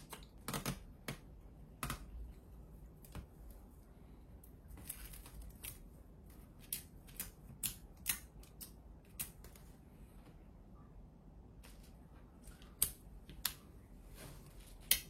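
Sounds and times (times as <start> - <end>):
tape ticks and crackles: 0.0 - 2.4.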